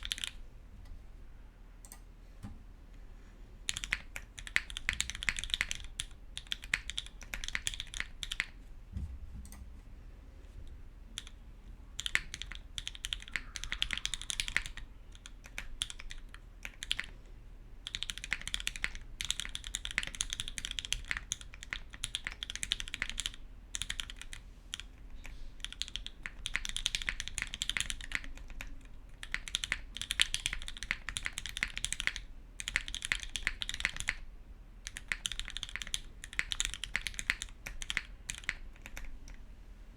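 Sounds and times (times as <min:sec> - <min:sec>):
typing on mechanical keyboard: 0:00.0 - 0:00.4, 0:03.7 - 0:08.6, 0:12.0 - 0:17.2, 0:17.8 - 0:39.4.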